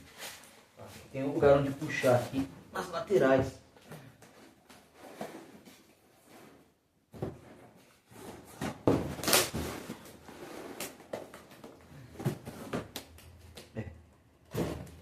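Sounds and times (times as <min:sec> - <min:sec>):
cardboard and foam packaging handled: 0:04.2 - 0:13.2.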